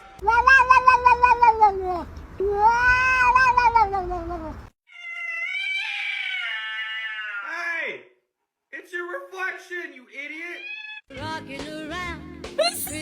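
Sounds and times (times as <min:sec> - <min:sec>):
cat yowling: 0:02.5 - 0:03.9, 0:04.9 - 0:07.5.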